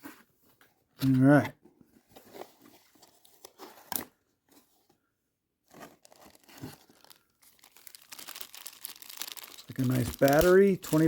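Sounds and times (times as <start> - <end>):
cardboard packaging tearing and crinkling: 5.7 - 11.0.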